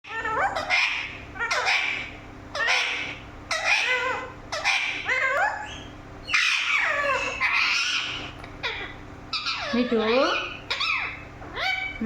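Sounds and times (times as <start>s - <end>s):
parrot harsh calls: 0.0s - 12.0s.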